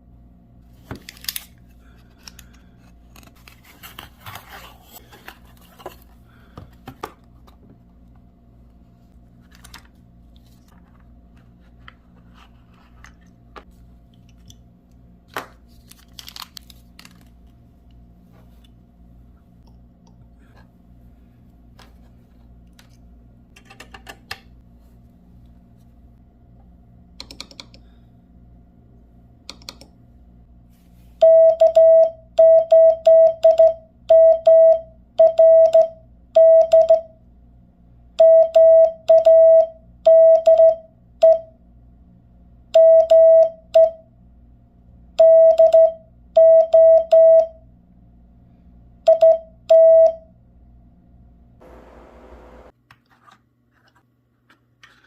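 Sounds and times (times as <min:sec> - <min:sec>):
morse code beeps: 0:31.2 - 0:37.1, 0:38.2 - 0:41.5, 0:42.8 - 0:44.0, 0:45.2 - 0:47.6, 0:49.1 - 0:50.2.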